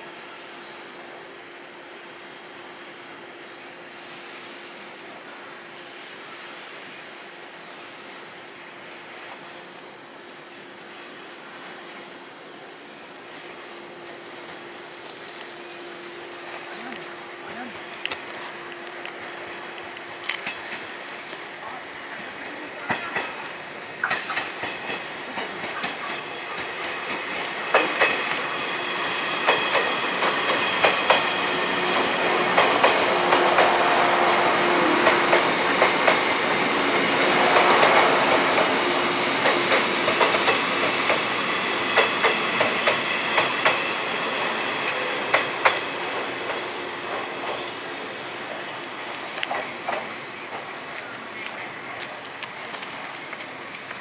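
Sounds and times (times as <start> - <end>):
electric train passing: 0.0 - 54.0
wheels clicking over rail joints: 22.3 - 47.7.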